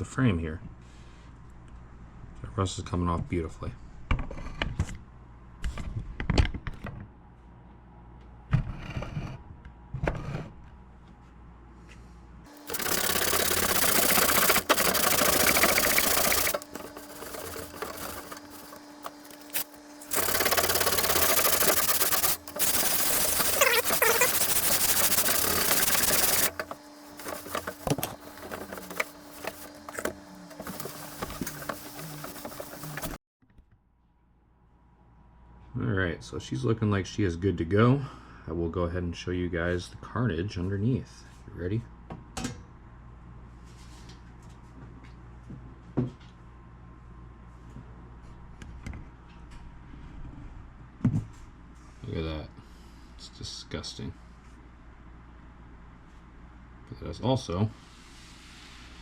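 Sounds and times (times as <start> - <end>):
motor hum: 12.5 - 33.2
power sander grinding metal: 12.6 - 33.2.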